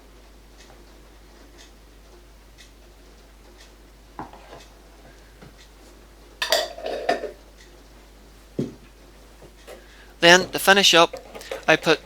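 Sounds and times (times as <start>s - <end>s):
kitchen utensils clattering: 6.4s - 7.4s, 9.7s - 12.0s.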